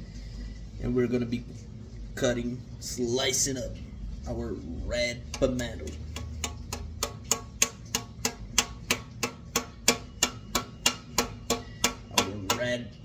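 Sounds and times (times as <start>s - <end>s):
knife chopping on cutting board: 5.4s - 12.7s.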